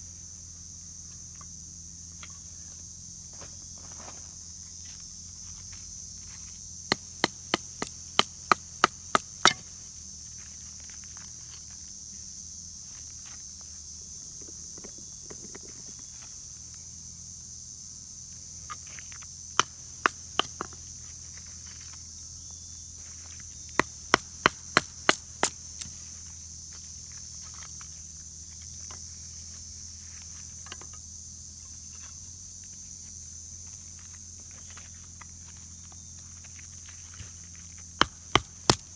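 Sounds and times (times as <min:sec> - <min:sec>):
kindling being chopped: 0:06.9 - 0:09.6, 0:19.6 - 0:20.6, 0:23.8 - 0:25.9, 0:38.0 - 0:38.9.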